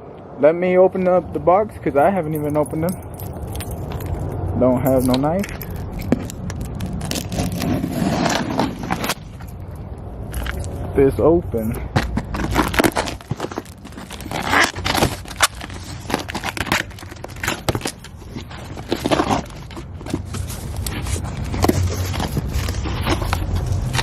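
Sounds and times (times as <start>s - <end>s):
packaging scraping and crinkling: 4.9s - 9.6s, 11.9s - 24.0s
tape and cardboard ripping: 5.0s - 9.5s, 12.0s - 24.0s.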